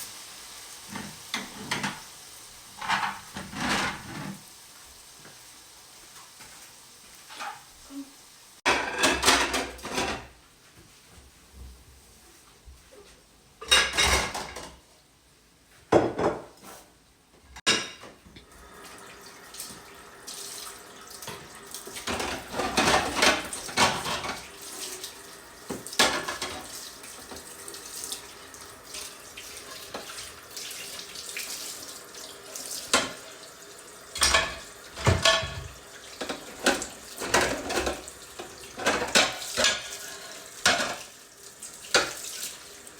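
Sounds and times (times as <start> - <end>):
water running from a tap: 0.0 - 6.5, 18.4 - 42.9
pots and cutlery clattering: 0.9 - 2.1, 2.8 - 4.4, 7.3 - 7.7, 8.7 - 10.4, 13.6 - 14.8, 17.6 - 18.2, 21.2 - 24.9, 25.7 - 27.5, 32.8 - 33.2, 34.1 - 41.1, 41.8 - 42.6.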